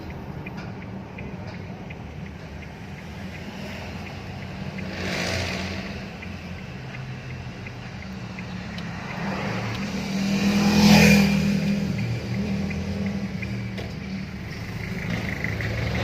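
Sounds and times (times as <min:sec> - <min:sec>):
road and engine hum: 0:00.0 - 0:16.0
traffic swishing past: 0:00.0 - 0:16.0.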